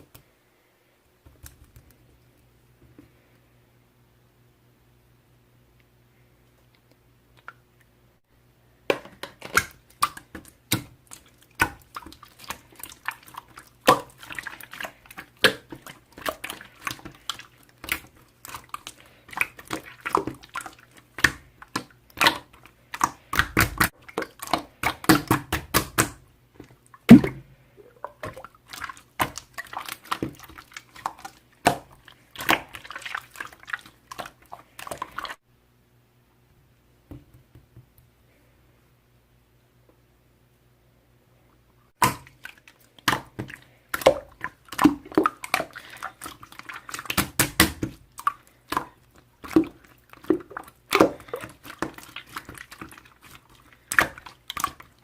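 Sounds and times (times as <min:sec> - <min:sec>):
wet clicks and small pops: 0:01.2 - 0:02.0.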